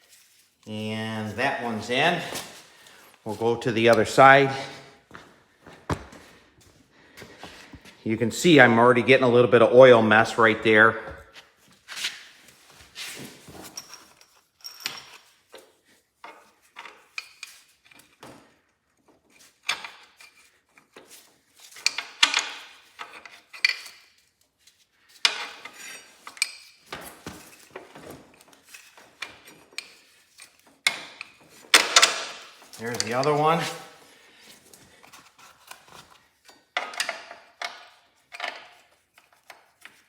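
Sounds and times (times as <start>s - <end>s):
metal clinks taps and scrapes: 13.0s - 40.0s.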